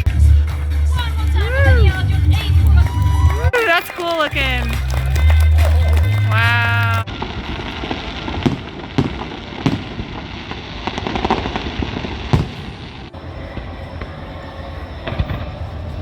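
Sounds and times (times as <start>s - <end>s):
fireworks bangs: 2.3s - 15.9s
steady noisy background: 13.1s - 16.0s.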